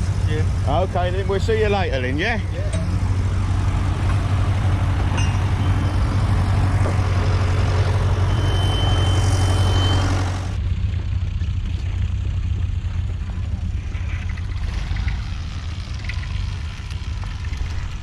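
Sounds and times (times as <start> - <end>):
tractor engine running: 0.0 - 18.0
rushing noise: 2.9 - 10.6.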